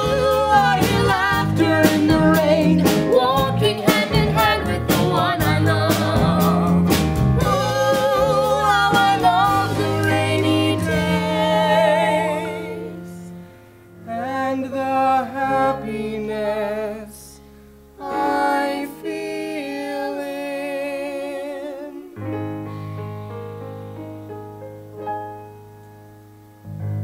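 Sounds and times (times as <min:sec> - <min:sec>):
person singing with vibrato: 0:00.0 - 0:13.3, 0:18.0 - 0:22.3
piano and bass accompaniment: 0:00.0 - 0:27.0.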